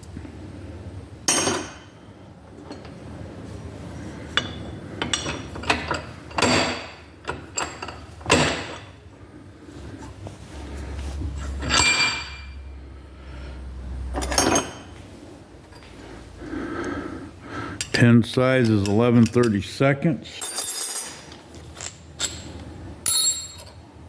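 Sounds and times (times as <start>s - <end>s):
steel parts clinking on workbench: 1.3s - 1.9s, 11.6s - 12.6s, 14.2s - 14.9s, 20.4s - 23.8s.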